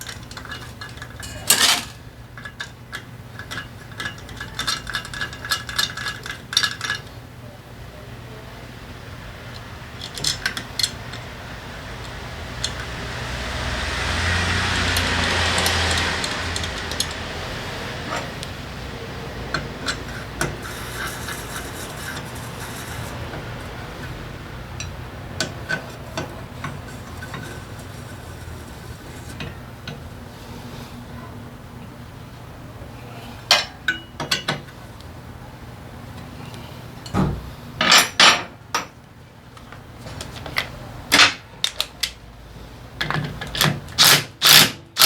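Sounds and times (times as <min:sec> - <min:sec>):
metal tools clinking: 0:00.0 - 0:07.1.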